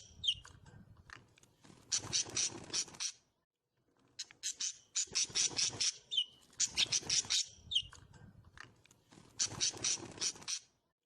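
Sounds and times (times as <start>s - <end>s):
cage birds chattering: 0.0s - 0.6s, 4.2s - 8.1s, 9.3s - 10.7s.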